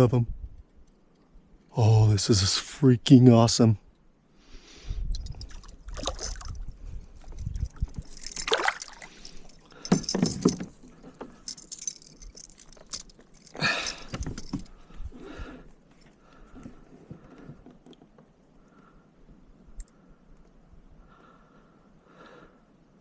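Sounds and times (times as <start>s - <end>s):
fishing gear clinking and rattling: 5.0s - 16.8s
water splashing: 5.5s - 6.6s, 8.3s - 9.4s.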